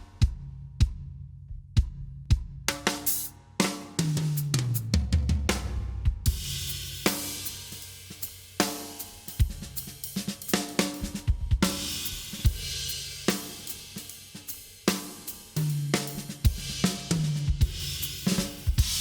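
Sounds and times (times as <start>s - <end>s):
low tom drum: 0.0s - 3.0s, 4.0s - 7.5s, 9.4s - 13.4s
drum kit playing: 1.8s - 19.0s.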